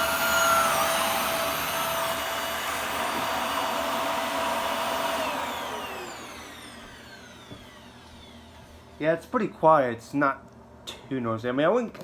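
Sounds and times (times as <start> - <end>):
vacuum motor winding down: 0.0 - 8.8
vacuum cleaner motor whine: 0.0 - 9.0.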